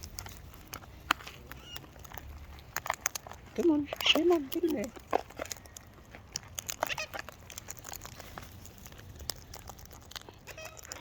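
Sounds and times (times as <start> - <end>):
beaks and feet tapping: 0.0 - 8.2.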